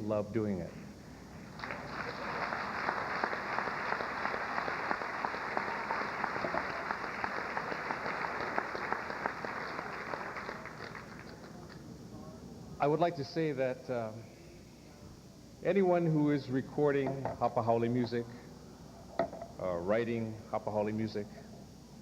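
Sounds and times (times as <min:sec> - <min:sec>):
audience applauding: 0:01.5 - 0:11.8.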